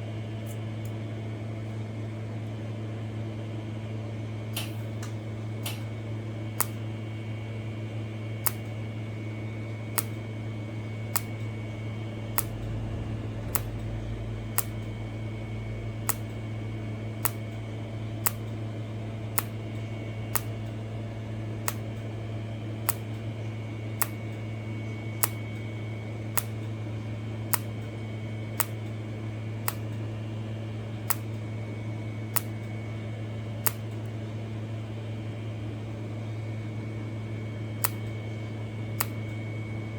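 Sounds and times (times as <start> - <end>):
welder arc pulse clicks: 4.5 - 39.8
welding equipment hum: 4.5 - 39.9.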